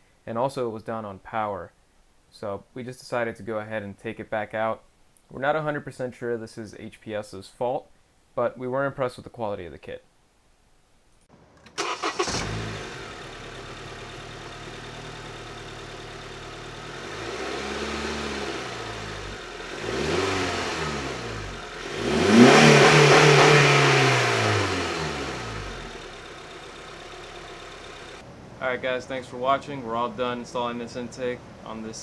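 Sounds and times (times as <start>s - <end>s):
car engine idling and revving: 12.0s - 28.2s.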